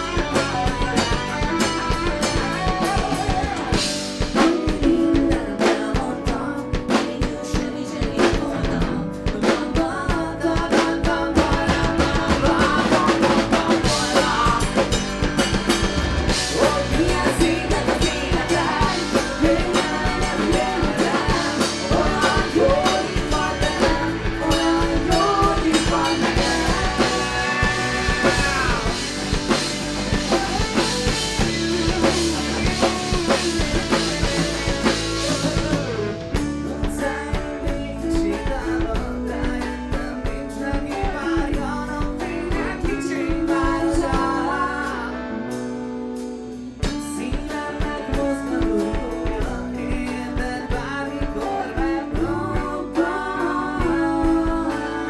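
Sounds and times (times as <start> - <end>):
rock band playing live: 0.0 - 55.0.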